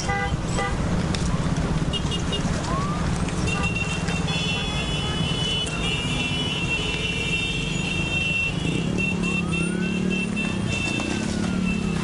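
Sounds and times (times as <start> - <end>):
street din: 0.0 - 12.0
siren rising and falling: 9.1 - 12.0.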